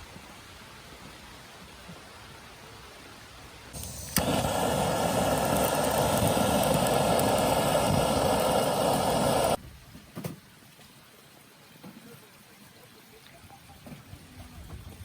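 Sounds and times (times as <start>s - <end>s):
small motor whirring: 3.8s - 9.6s.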